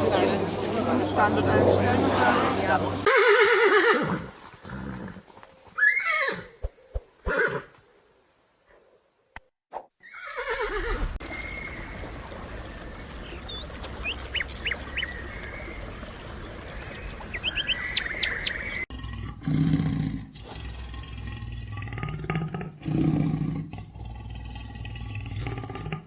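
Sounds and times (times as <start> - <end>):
small birds chirping: 0.0 - 3.1, 11.2 - 18.9.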